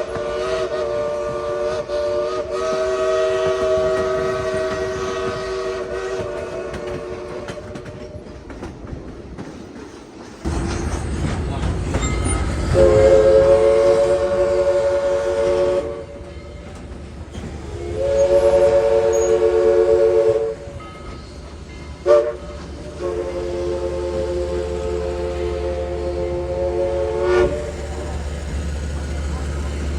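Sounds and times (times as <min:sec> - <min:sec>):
steam whistle blasts: 0:00.0 - 0:08.1, 0:12.6 - 0:16.3, 0:17.6 - 0:21.3, 0:22.0 - 0:28.2.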